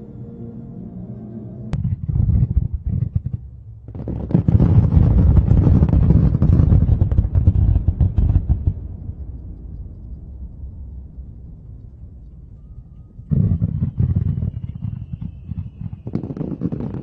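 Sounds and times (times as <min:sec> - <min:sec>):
low rumble: 0:00.0 - 0:17.0
fireworks bangs and crackling: 0:01.8 - 0:09.0, 0:13.3 - 0:17.0.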